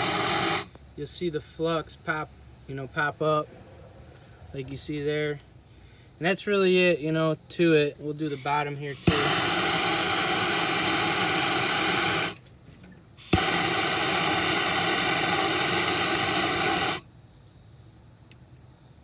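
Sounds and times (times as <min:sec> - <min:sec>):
torch flame hissing: 0:00.0 - 0:00.8, 0:08.3 - 0:12.4, 0:13.2 - 0:17.1
igniter click: 0:08.3 - 0:12.4, 0:13.2 - 0:17.0.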